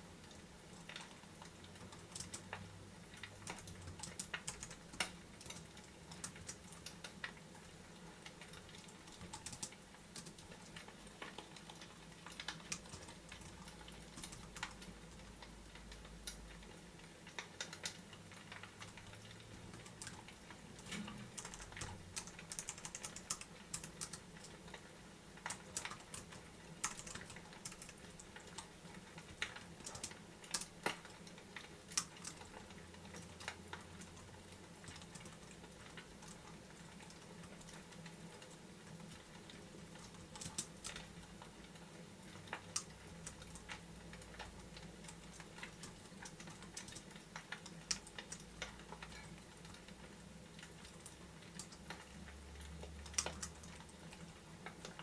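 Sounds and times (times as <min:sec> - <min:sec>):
fireplace crackling and popping: 0:00.1 - 0:55.0.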